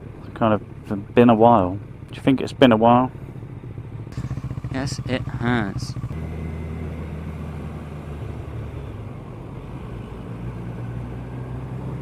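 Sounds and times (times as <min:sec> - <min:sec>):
road noise: 0:00.0 - 0:12.0
motorcycle engine running: 0:03.2 - 0:09.6.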